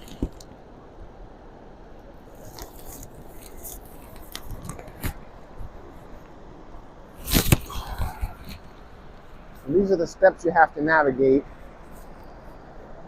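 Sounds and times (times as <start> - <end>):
loud rustle: 7.2 - 9.6.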